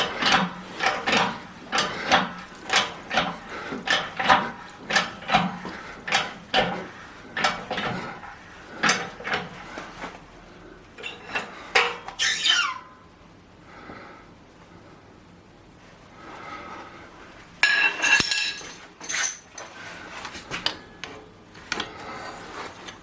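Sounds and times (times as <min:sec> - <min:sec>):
short falling squeak: 0:12.2 - 0:13.0.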